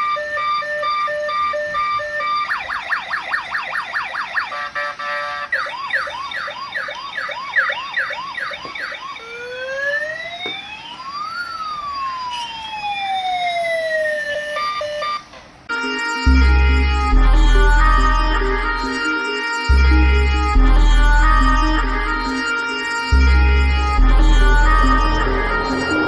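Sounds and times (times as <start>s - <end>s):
toy police car siren: 0.0s - 16.3s.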